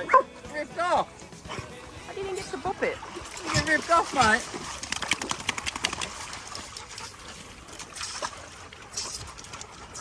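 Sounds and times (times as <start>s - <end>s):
water splashing and trickling: 0.0s - 10.0s
dog panting: 6.5s - 7.6s.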